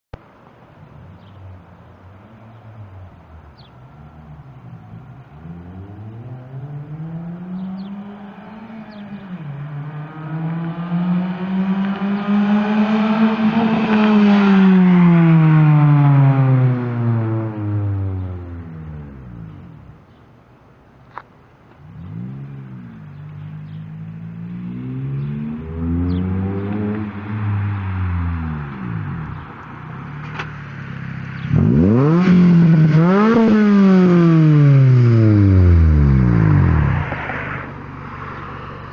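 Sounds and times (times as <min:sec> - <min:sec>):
car engine revving: 0:02.2 - 0:20.0, 0:21.7 - 0:38.9.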